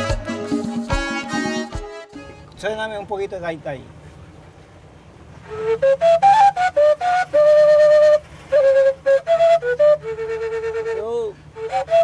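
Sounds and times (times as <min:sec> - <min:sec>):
duct flute melody: 0:00.0 - 0:02.6, 0:05.4 - 0:12.0.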